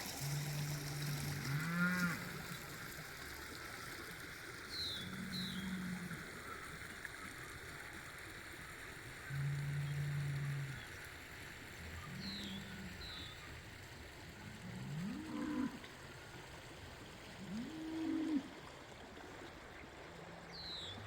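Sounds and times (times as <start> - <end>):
running water: 0.0 - 21.0
cattle mooing: 14.7 - 15.8.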